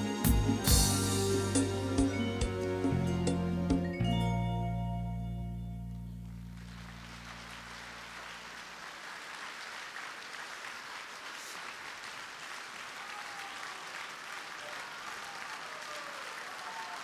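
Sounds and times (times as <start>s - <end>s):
sustained music chord: 0.0s - 7.5s
audience applause: 6.6s - 17.0s.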